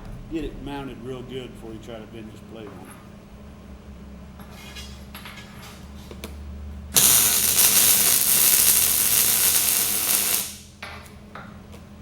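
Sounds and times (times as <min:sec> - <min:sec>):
electric welding arc: 0:06.9 - 0:10.8.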